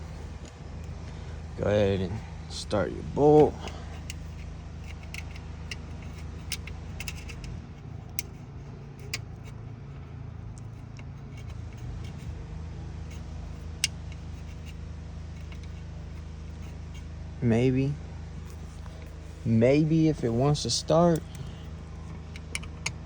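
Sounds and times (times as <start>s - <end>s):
steady low hum: 0.0s - 23.0s
small metallic clicks and taps: 3.3s - 12.3s, 15.4s - 17.1s, 21.1s - 23.0s.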